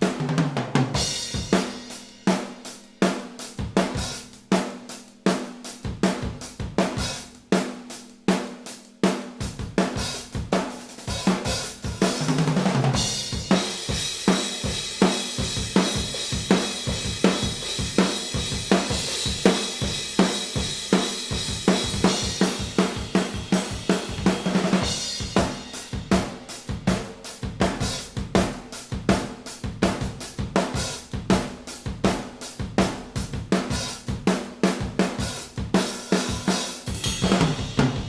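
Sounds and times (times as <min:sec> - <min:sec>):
drum kit beat: 0:00.0 - 0:38.0
tom fill: 0:09.5 - 0:38.0.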